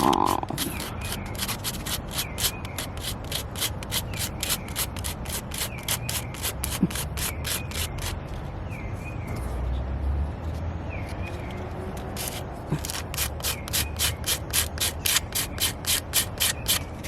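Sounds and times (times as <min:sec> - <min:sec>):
abrasive rasping on wood: 0:00.0 - 0:08.2, 0:12.2 - 0:16.9.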